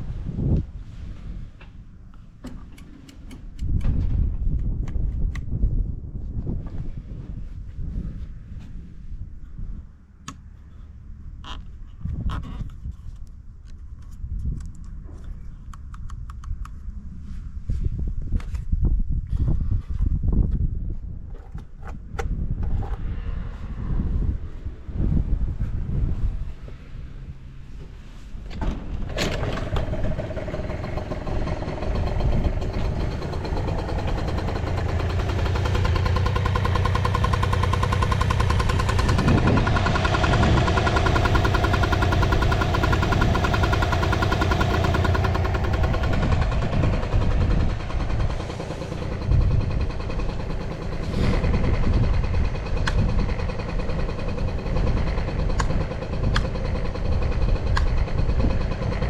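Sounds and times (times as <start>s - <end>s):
scooter engine starting and revving: 28.7s - 59.0s.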